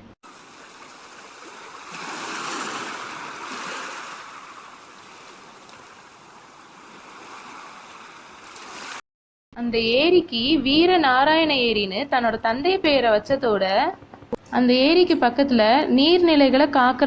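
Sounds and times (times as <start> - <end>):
flowing water rushing: 0.2 - 9.0.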